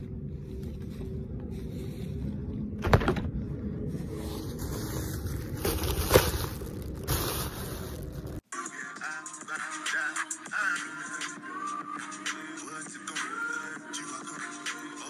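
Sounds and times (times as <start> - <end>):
hip hop music: 8.4 - 15.0.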